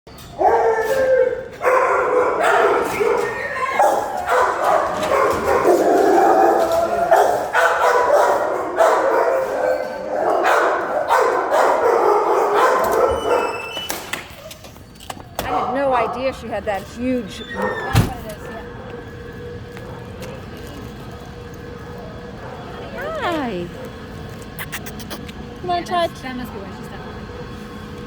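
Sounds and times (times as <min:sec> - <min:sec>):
dog howling and whining: 0:00.2 - 0:14.6, 0:17.4 - 0:19.0.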